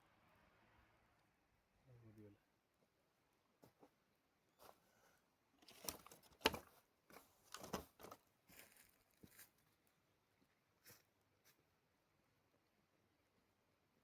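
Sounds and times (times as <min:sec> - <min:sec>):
crinkling and rustling: 0:04.6 - 0:10.0.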